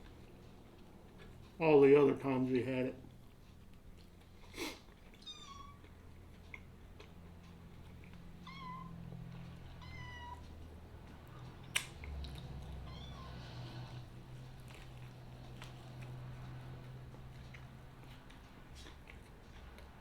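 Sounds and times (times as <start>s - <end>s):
kitten meowing: 5.2s - 5.8s, 8.4s - 9.0s, 9.8s - 10.4s, 12.8s - 13.9s.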